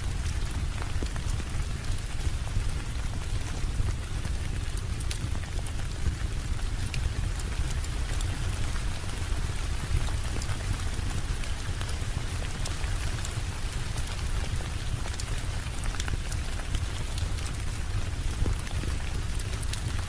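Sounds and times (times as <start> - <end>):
sharp ticks and pops: 4.2 - 8.4, 14.0 - 20.0.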